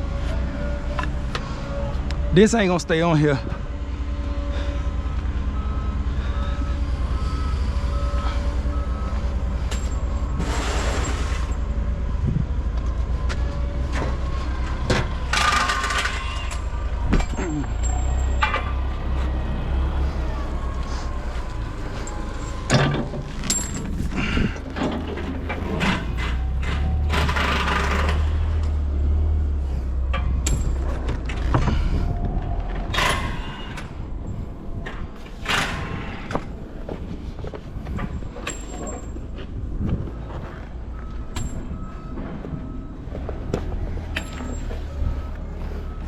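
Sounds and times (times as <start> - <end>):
diesel engine idling: 11.1 - 46.0.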